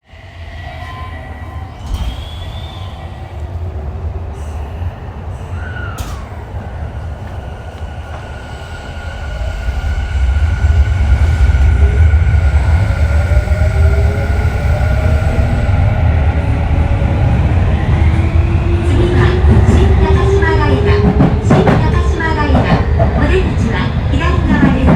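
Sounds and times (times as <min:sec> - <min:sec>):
short squeal: 0:00.6 - 0:03.2
train motor whine: 0:05.5 - 0:21.8.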